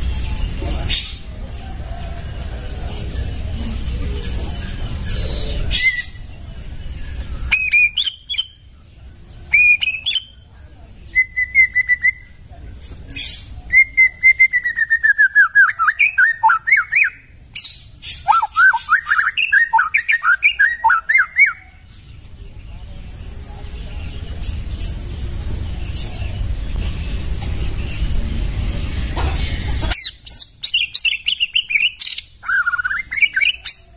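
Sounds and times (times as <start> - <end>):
songbird whistling runs: 4.6 - 8.6, 11.0 - 22.0.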